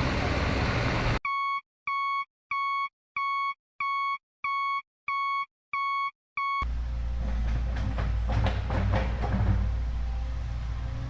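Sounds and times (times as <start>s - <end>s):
single-tone electronic beeps: 1.2s - 6.6s.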